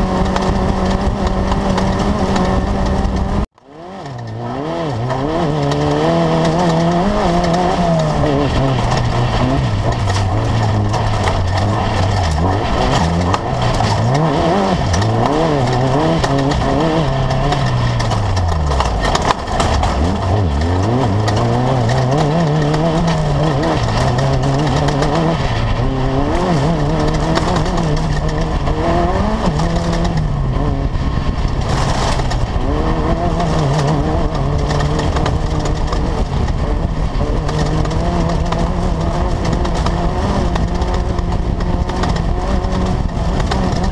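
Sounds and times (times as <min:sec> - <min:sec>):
buggy engine revving: 0:00.0 - 0:43.9
rushing noise: 0:00.0 - 0:43.9.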